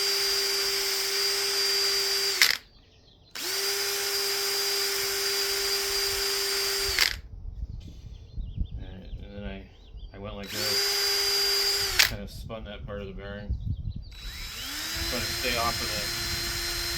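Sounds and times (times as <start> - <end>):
power tool motor whining: 0.0 - 2.7, 3.4 - 7.2, 10.4 - 12.2, 14.1 - 16.9.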